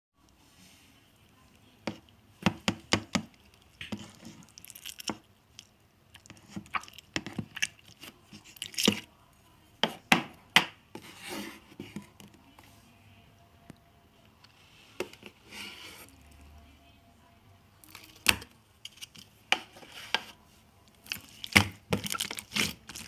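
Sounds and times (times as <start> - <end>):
slime squishing: 1.5 - 9.1, 17.8 - 23.0.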